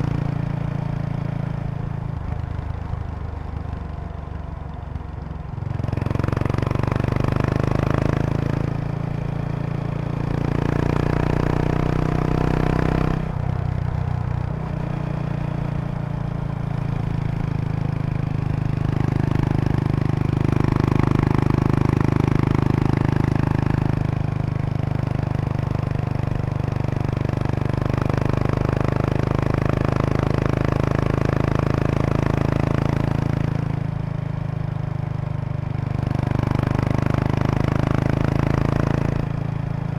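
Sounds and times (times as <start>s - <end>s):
motorcycle engine exhaust: 0.0s - 39.9s.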